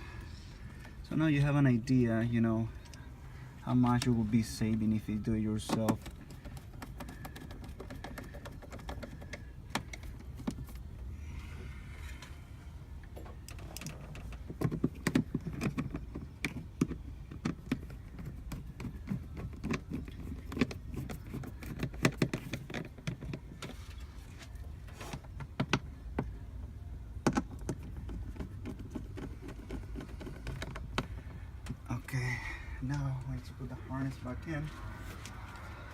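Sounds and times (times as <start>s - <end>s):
low steady rumble: 0.0s - 35.9s
tools and car parts clicking: 5.6s - 10.9s, 13.0s - 23.8s, 27.2s - 31.9s.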